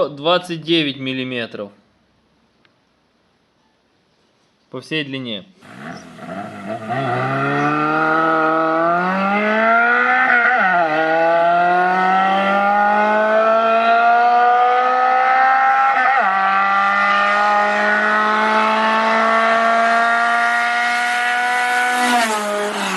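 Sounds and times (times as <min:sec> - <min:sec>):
car engine accelerating: 0:05.6 - 0:22.9.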